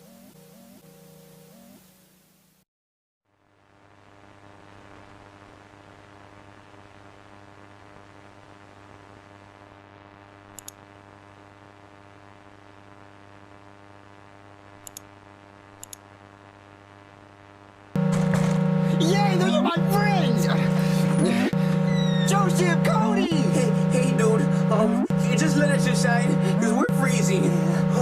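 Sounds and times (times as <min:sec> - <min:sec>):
low buzzing hum: 0:03.6 - 0:28.0
double clicks: 0:10.5 - 0:10.8, 0:14.8 - 0:15.1, 0:15.8 - 0:16.0.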